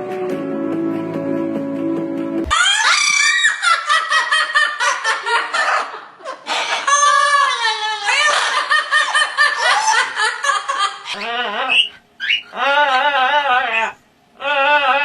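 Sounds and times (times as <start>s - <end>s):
high-pitched cackling laughter: 2.5s - 14.0s.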